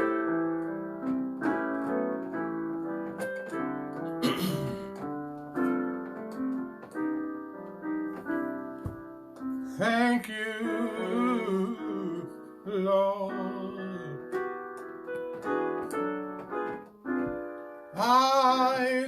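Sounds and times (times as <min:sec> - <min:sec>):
piano playing slow chords: 0:00.0 - 0:19.0.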